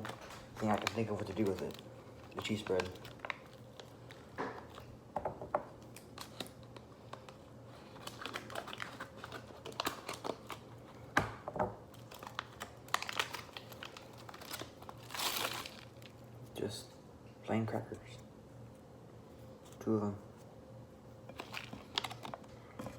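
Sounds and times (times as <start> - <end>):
plastic packets crinkling: 0.0 - 4.9, 5.8 - 10.9, 11.9 - 16.3, 21.3 - 22.9.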